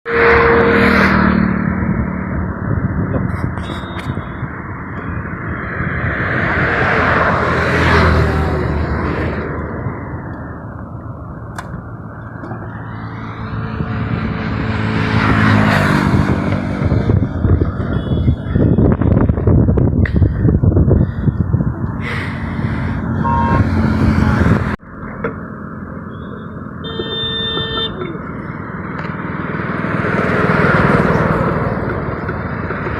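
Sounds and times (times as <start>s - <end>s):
horn-like tone: 0.0s - 1.7s, 3.6s - 4.5s, 23.2s - 24.7s, 26.1s - 28.1s
road and wind noise: 0.0s - 32.9s
vehicle engine hum: 0.1s - 32.9s.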